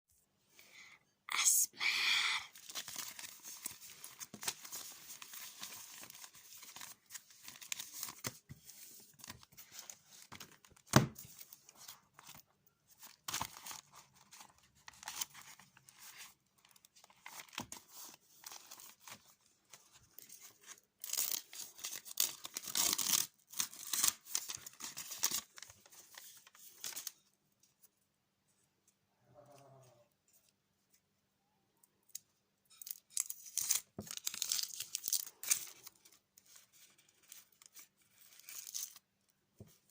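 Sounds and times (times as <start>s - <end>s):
paper crinkling and tearing: 2.5s - 27.2s, 32.7s - 39.0s.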